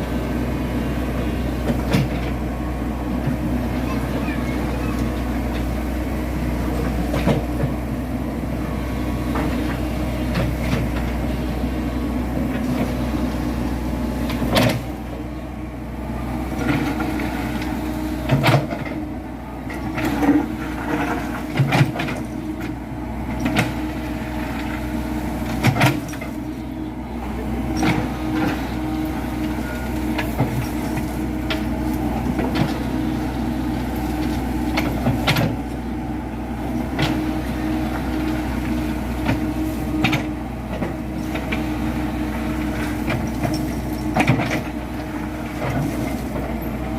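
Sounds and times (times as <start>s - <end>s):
excavator diesel engine running: 0.0s - 46.9s
machine knocks and clanks: 14.3s - 14.9s, 18.2s - 19.0s, 19.7s - 23.9s, 25.4s - 26.4s, 42.7s - 44.8s.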